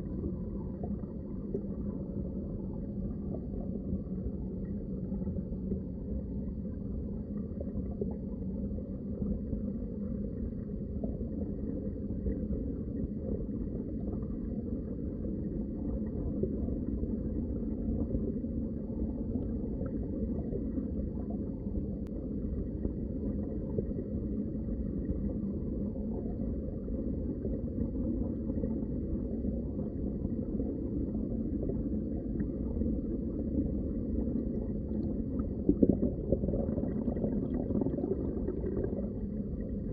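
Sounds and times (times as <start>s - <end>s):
underwater rush of moving water: 32.6s - 39.9s.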